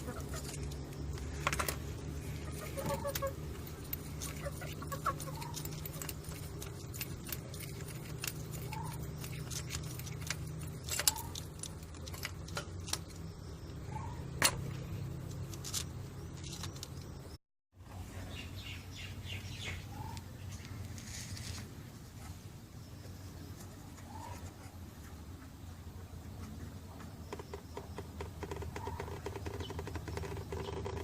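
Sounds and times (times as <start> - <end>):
steady low hum: 0.0 - 31.0
faint bird chirps: 22.2 - 31.0.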